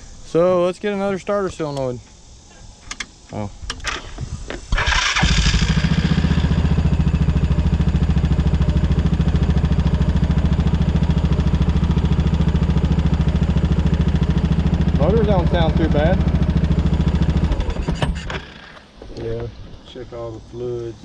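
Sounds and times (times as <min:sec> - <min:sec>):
engine cranking and idling: 0:03.8 - 0:18.9.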